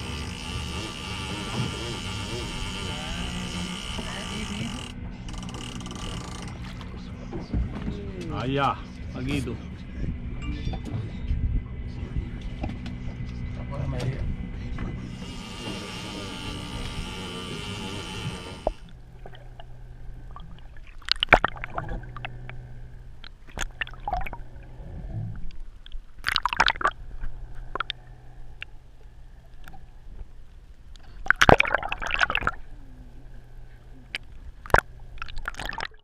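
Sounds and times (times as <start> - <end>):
low steady hum: 0.0 - 36.0
water sloshing and splashing: 16.4 - 32.8, 34.0 - 36.0.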